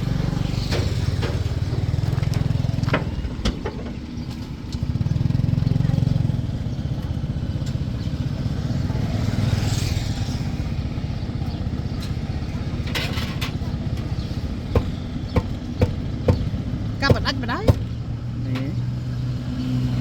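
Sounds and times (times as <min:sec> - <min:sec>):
vehicle engine droning: 0:00.0 - 0:20.0
sharp knocks: 0:14.7 - 0:17.9.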